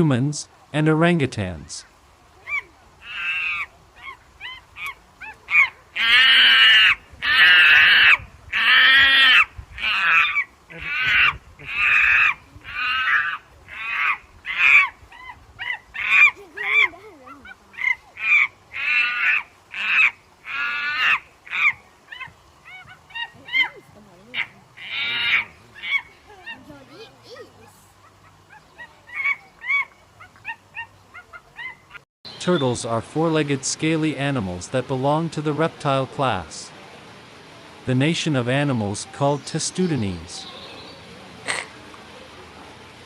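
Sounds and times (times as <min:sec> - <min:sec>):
chimpanzee hooting screams: 0:02.4 - 0:26.6.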